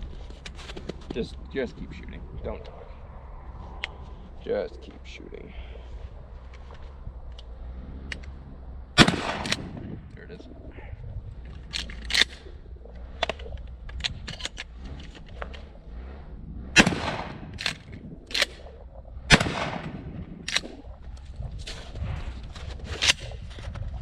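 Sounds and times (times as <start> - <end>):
shotgun pump clacks: 9.0 - 9.8, 11.5 - 15.7, 16.8 - 20.9
shotgun blasts: 9.0 - 10.2, 16.8 - 20.8.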